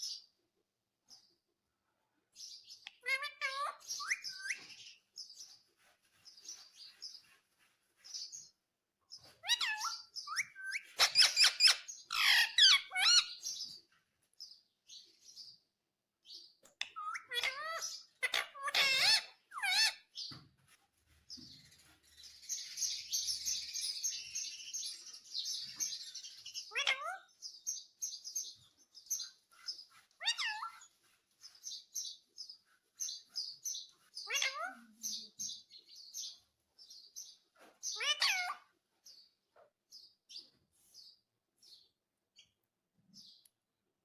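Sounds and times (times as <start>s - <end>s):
parrot chirping and calling: 2.8s - 5.5s, 9.2s - 13.7s, 16.7s - 20.3s, 21.5s - 36.5s, 37.1s - 38.8s.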